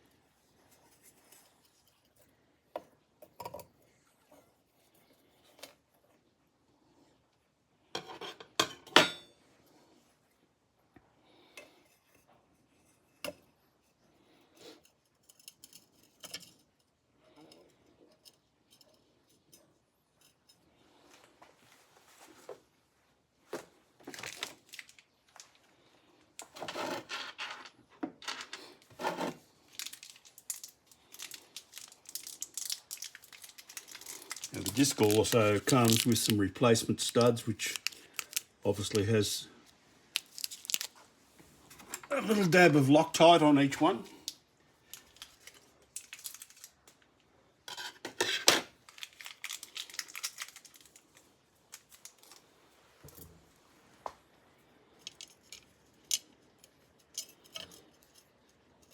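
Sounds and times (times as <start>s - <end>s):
packaging crinkling: 24.1s - 25.5s, 29.6s - 39.2s, 40.1s - 41.1s, 44.9s - 47.0s, 48.8s - 52.5s
sharp clicks of small parts: 29.8s - 36.4s.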